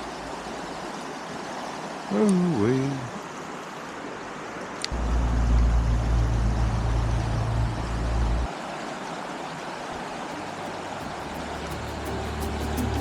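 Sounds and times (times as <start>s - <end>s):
rushing mountain stream: 0.0s - 5.0s, 6.6s - 13.0s
low microphone rumble: 4.9s - 8.5s.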